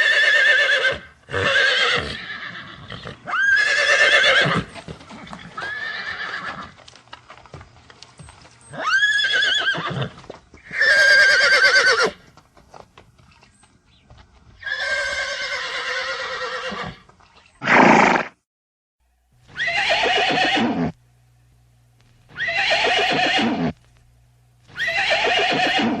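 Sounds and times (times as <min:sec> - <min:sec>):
horse whinnying: 0:00.0 - 0:06.8, 0:08.7 - 0:12.2, 0:14.6 - 0:17.0, 0:17.6 - 0:18.4, 0:19.5 - 0:21.0, 0:22.3 - 0:23.8, 0:24.7 - 0:26.0
low electrical hum: 0:00.0 - 0:17.6, 0:19.0 - 0:26.0.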